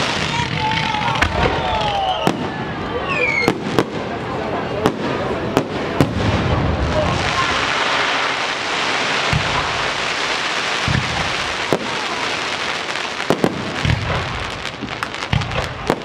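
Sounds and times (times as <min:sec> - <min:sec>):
fireworks crackling: 0:00.0 - 0:16.0
deep firework booms: 0:03.4 - 0:16.0
sharp firework cracks: 0:04.8 - 0:16.0.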